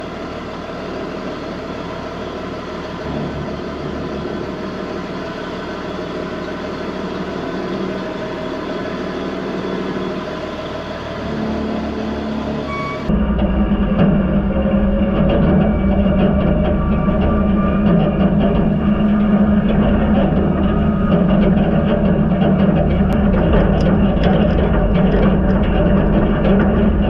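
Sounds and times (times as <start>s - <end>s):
farm machine engine drone: 0.0s - 27.0s.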